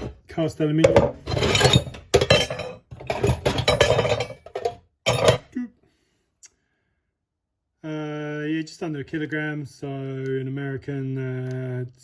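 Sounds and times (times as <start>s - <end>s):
metal scrap parts clattering: 0.9s - 5.4s.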